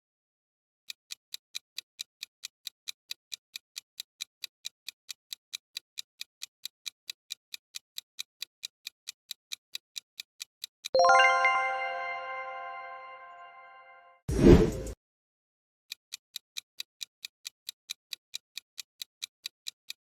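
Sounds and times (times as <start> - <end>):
clock-like ticking: 1.0 - 12.9, 16.1 - 20.0.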